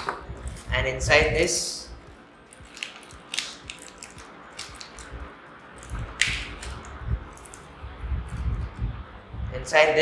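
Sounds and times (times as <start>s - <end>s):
packaging crinkling: 2.1s - 7.7s
packaging rustling: 2.5s - 7.6s.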